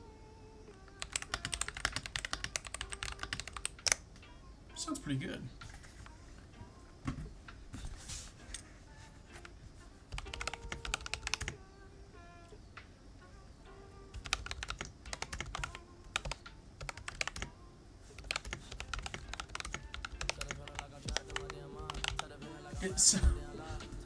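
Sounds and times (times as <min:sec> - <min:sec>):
mechanical keyboard typing: 0:00.9 - 0:04.0, 0:10.1 - 0:11.6, 0:14.1 - 0:17.5, 0:18.1 - 0:22.4.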